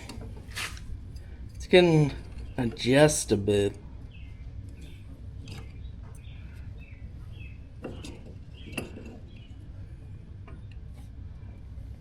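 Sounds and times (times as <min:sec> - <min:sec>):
low steady hum: 0:00.0 - 0:12.0
small bird chirping: 0:04.0 - 0:07.8.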